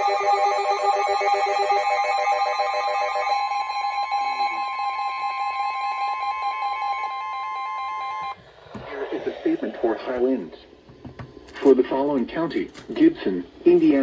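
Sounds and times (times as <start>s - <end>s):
pulsing electronic tones: 0.0s - 8.4s
two-note electronic alert tone: 0.0s - 8.4s.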